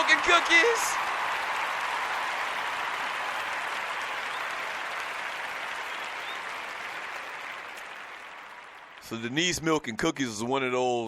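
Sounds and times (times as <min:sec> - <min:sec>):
crowd applause: 0:00.0 - 0:09.3.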